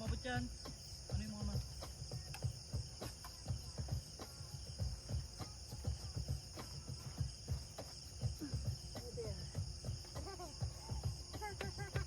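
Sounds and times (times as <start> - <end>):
insects chirring: 0.0 - 12.0.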